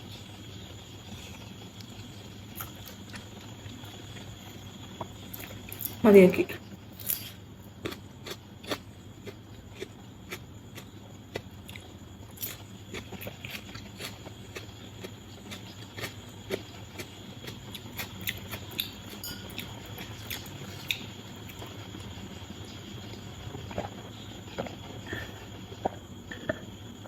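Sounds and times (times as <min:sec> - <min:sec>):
person chewing food: 0:00.7 - 0:05.9, 0:07.0 - 0:26.8.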